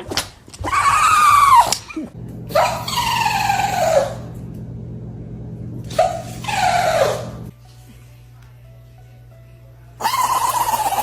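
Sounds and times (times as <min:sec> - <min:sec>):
dog whining howls: 0:00.6 - 0:01.8, 0:02.5 - 0:04.3, 0:05.9 - 0:07.4, 0:10.0 - 0:11.0
steady low hum: 0:02.1 - 0:10.0
dog yelp: 0:02.5 - 0:04.3, 0:05.9 - 0:07.4, 0:10.0 - 0:11.0.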